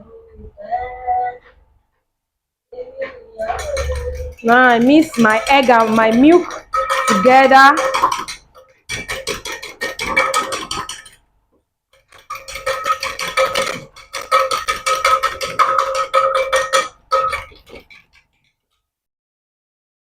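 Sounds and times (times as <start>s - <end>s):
utensil clicking against bowl: 3.6s - 11.2s, 12.0s - 18.0s.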